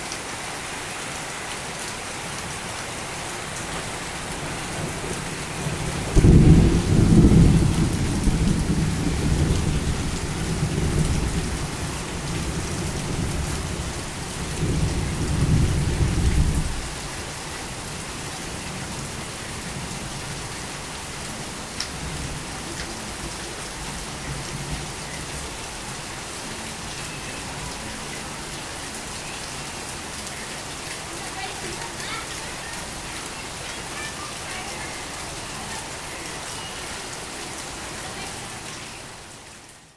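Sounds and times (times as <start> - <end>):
torrential rain: 0.0 - 39.9
thunder rumble: 4.8 - 16.9.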